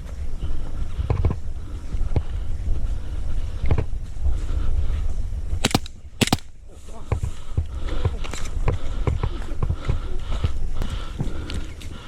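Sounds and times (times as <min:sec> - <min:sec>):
low rumble of wind: 0:00.0 - 0:12.0
airsoft gun shots: 0:05.6 - 0:06.5.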